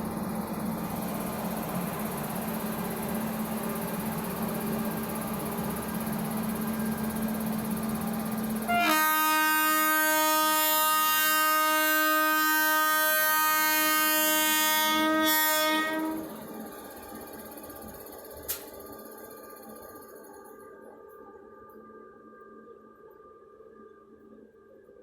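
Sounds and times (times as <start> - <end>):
locomotive twin-tone horn blast: 8.6 - 16.7.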